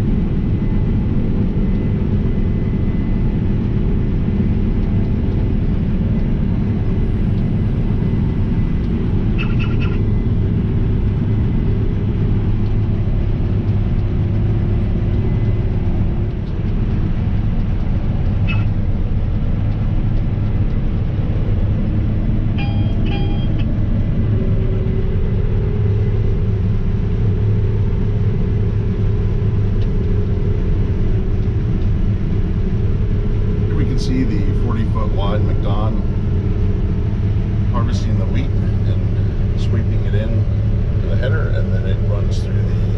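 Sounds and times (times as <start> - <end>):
combine harvester rumbling: 0.0 - 42.9
short high beeps: 18.5 - 18.7, 22.6 - 23.7.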